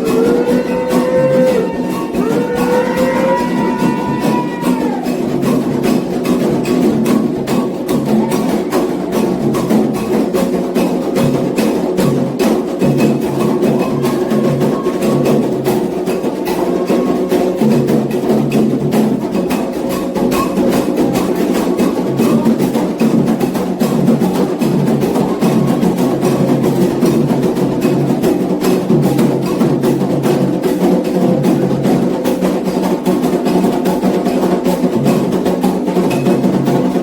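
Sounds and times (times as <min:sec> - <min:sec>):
chanting voices: 0:00.0 - 0:05.5, 0:13.2 - 0:17.9
hand drums playing fast rhythm: 0:00.0 - 0:37.0.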